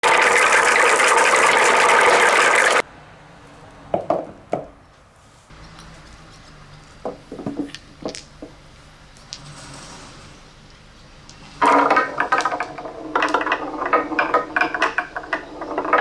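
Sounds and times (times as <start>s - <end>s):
marbles clicking on wooden slopes: 0.0s - 2.8s, 7.3s - 8.6s, 11.3s - 16.0s
marbles pouring and rolling: 0.0s - 2.8s, 11.6s - 16.0s.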